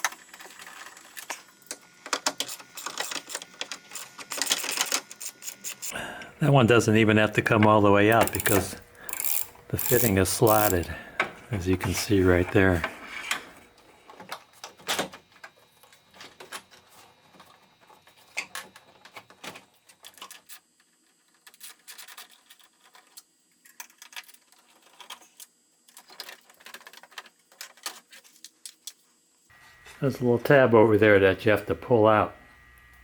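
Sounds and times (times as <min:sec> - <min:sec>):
hand tools clicking on plastic: 0:07.6 - 0:10.9.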